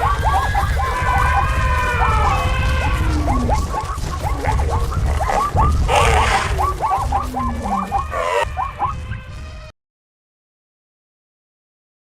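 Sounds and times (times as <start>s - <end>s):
animals yelping: 0.0s - 9.0s
running hooves rumble: 0.0s - 9.7s.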